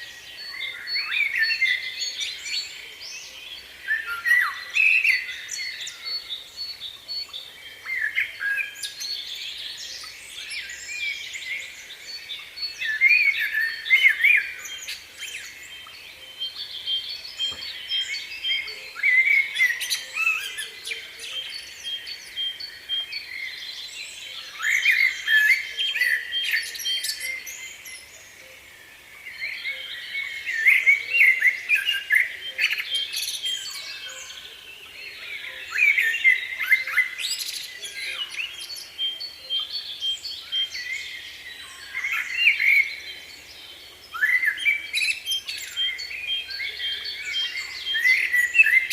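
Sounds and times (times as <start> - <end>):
small birds chirping: 0.0 - 48.9.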